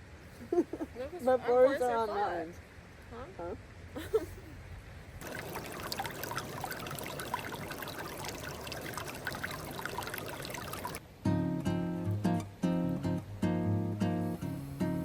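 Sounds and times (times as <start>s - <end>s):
water trickling with plinks: 5.2s - 11.0s.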